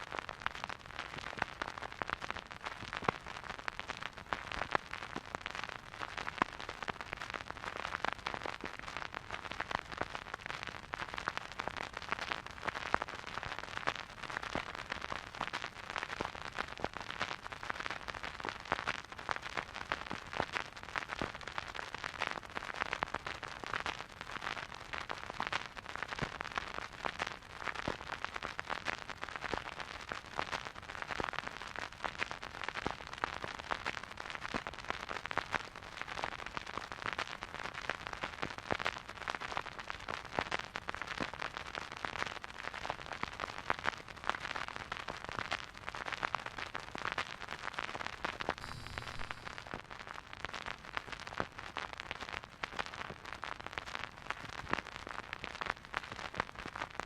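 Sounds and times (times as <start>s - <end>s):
vinyl record crackles and pops: 0.0s - 57.0s
steady record hiss: 43.2s - 57.0s.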